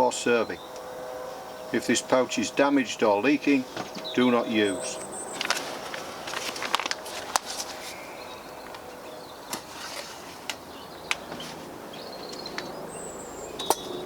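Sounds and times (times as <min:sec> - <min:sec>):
faint bird calls: 0:07.6 - 0:14.0
sharp handling clicks and taps: 0:10.4 - 0:11.4.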